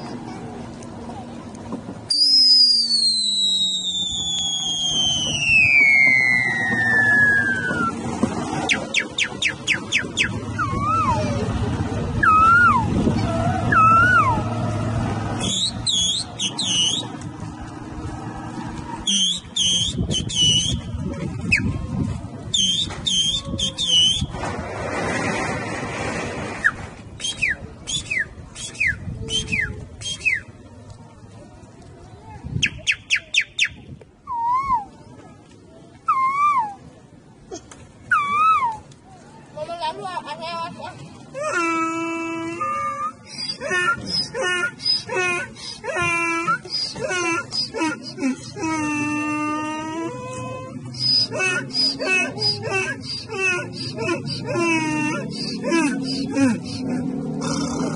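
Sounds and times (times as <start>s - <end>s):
man whistling a falling note: 2.1s - 8.0s
man imitating bird calls: 42.4s - 57.0s.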